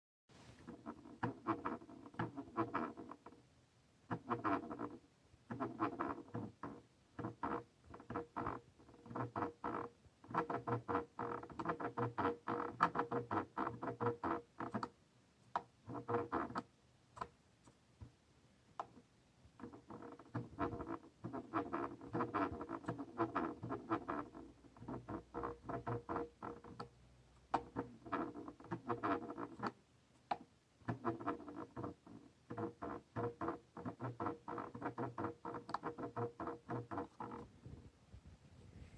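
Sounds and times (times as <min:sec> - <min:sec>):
mouse scroll wheel clicking: 0:04.1 - 0:14.9, 0:15.5 - 0:17.3, 0:19.6 - 0:37.4.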